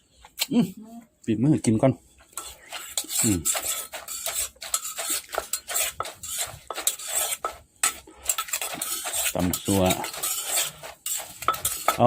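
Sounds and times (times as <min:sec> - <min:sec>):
utensils clattering in a mortar: 0:02.4 - 0:12.0.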